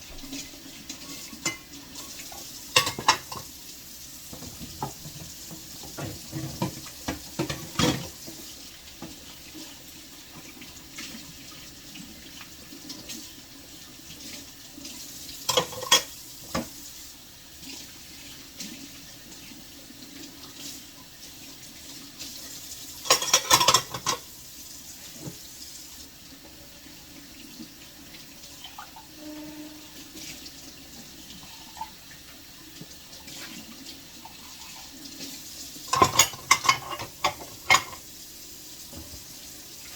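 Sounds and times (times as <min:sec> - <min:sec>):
tap water running into sink: 0:00.0 - 0:39.9
dishes clattering: 0:01.4 - 0:01.7, 0:02.7 - 0:03.5, 0:04.3 - 0:08.2, 0:15.5 - 0:16.7, 0:23.0 - 0:24.3, 0:35.9 - 0:38.1.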